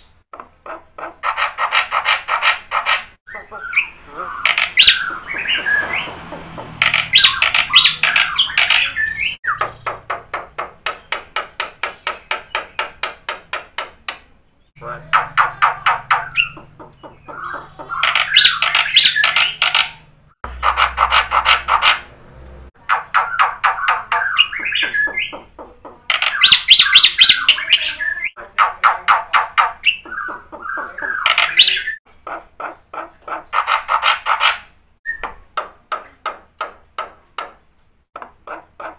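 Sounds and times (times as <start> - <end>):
myna singing and clicking: 6.6 - 9.0, 15.1 - 20.0, 23.6 - 31.8.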